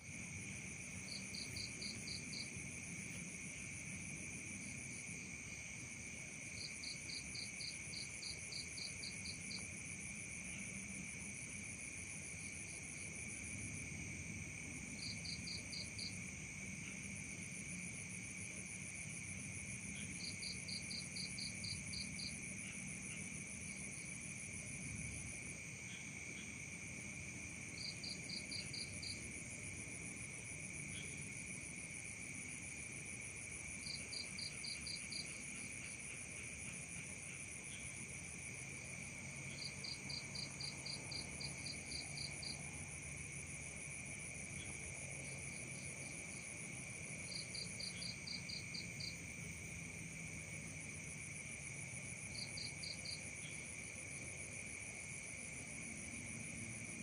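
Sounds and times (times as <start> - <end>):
insects trilling: 14.7 - 57.0.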